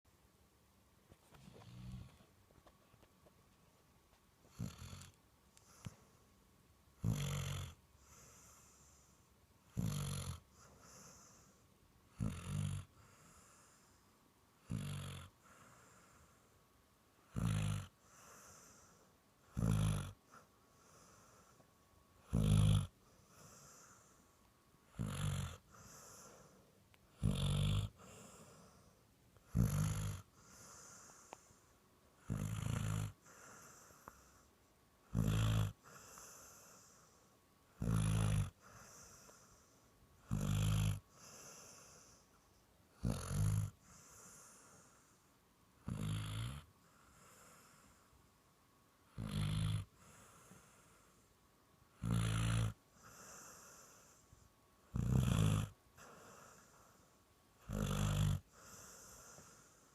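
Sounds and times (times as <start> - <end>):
dog snoring: 1.3 - 2.3, 4.4 - 6.2, 7.0 - 14.0, 14.6 - 16.5, 17.2 - 21.6, 22.2 - 48.1, 49.1 - 51.2, 51.9 - 59.9
dog breathing softly: 5.5 - 6.3, 8.0 - 9.4, 10.5 - 11.7, 12.8 - 14.2, 15.4 - 16.6, 17.4 - 21.8, 22.8 - 34.6, 35.2 - 45.4, 46.8 - 48.2, 49.8 - 51.4, 52.9 - 54.5, 55.9 - 57.2, 58.4 - 59.9.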